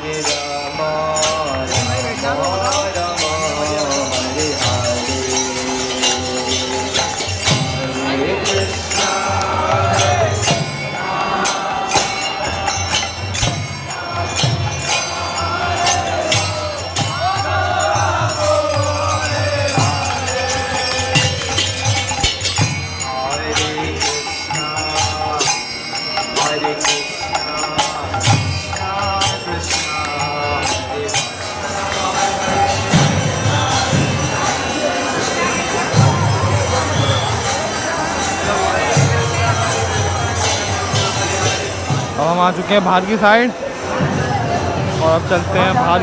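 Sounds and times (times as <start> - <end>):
voices chanting together: 0.0 - 42.8
hand cymbals struck: 0.0 - 46.0
drum: 1.3 - 25.5.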